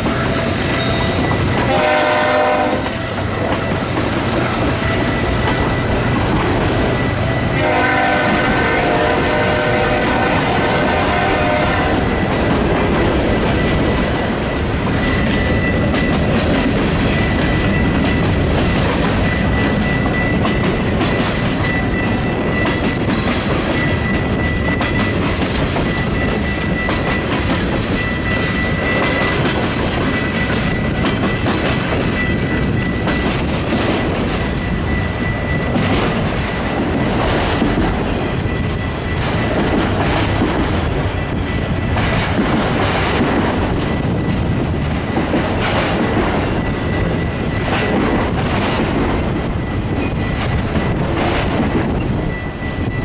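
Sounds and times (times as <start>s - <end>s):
train rumbling past: 0.0s - 53.0s
train horn blast: 0.4s - 3.2s, 7.4s - 12.2s.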